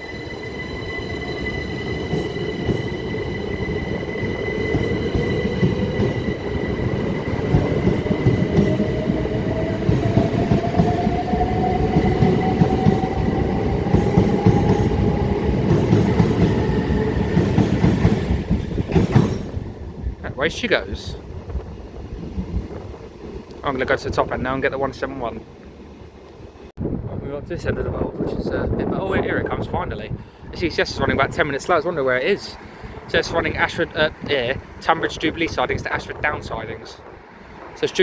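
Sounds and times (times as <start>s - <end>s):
electric train traction whine: 0.0s - 20.2s
wheels rumbling on rails: 0.0s - 26.7s, 30.7s - 38.0s.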